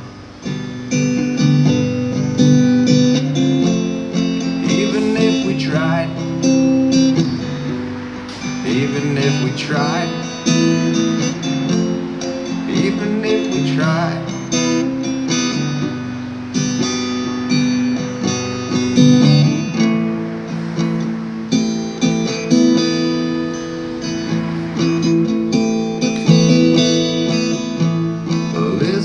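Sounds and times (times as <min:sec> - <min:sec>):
acoustic guitar strumming: 0:00.0 - 0:29.0
person singing: 0:04.2 - 0:15.0, 0:23.8 - 0:29.0.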